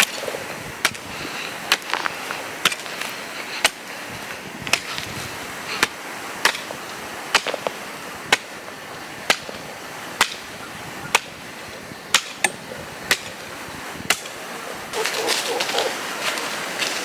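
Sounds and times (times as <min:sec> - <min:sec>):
hand tool chopping: 0:00.0 - 0:01.1, 0:01.7 - 0:03.9, 0:04.7 - 0:05.1, 0:05.8 - 0:08.5, 0:09.2 - 0:10.5, 0:11.1 - 0:11.4, 0:12.1 - 0:13.4, 0:14.0 - 0:14.4.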